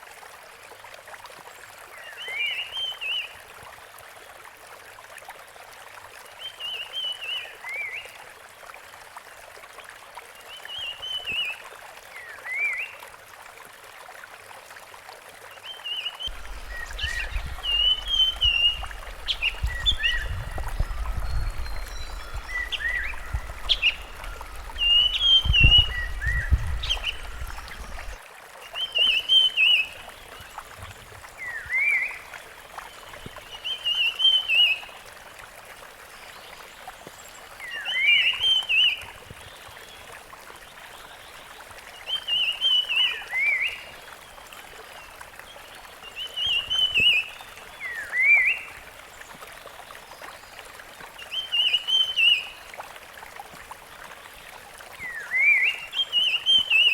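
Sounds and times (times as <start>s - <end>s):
bird singing whistled notes: 16.2s - 28.2s
low rumble: 16.3s - 28.2s
steady hiss: 16.3s - 28.2s.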